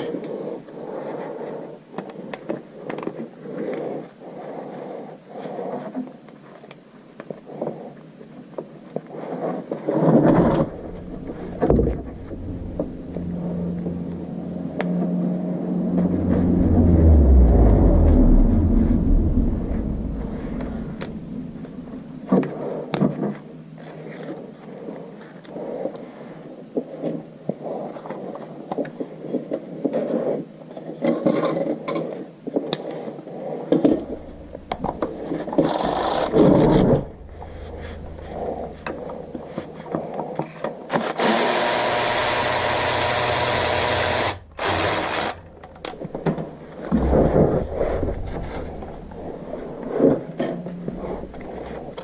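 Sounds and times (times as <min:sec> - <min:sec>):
power tool running: 0:41.2 - 0:45.5.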